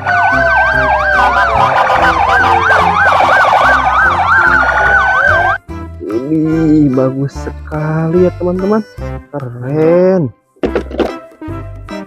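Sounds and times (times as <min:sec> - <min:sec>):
electronic siren wailing: 0:00.0 - 0:05.6.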